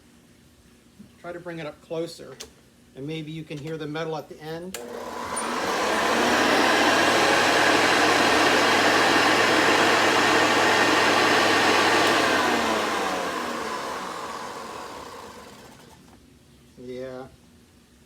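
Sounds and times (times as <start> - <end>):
vacuum cleaner motor running: 4.8 - 16.2.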